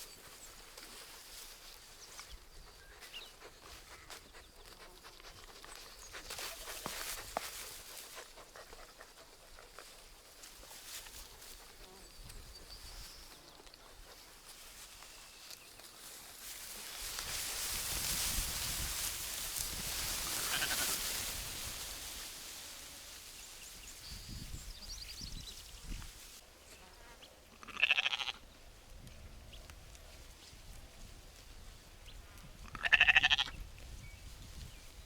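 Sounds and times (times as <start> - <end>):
sheep bleating: 20.3 - 21.0, 27.6 - 28.4, 32.7 - 33.5.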